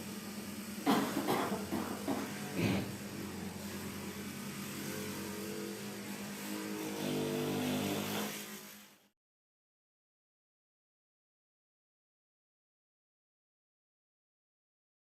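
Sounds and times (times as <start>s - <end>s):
motor humming: 0.0s - 8.5s.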